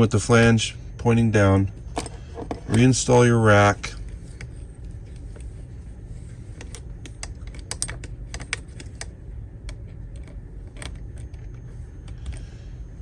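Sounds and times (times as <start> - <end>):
small plastic and metal parts clicking: 6.6 - 9.1.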